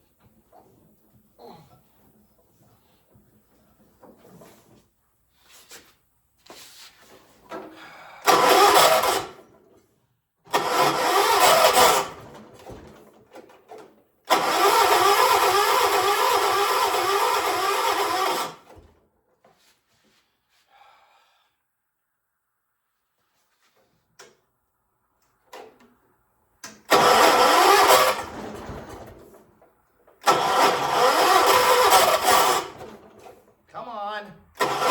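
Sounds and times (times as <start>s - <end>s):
starter cranking engine: 7.5s - 9.6s, 10.5s - 18.9s, 26.6s - 33.5s, 34.5s - 34.9s.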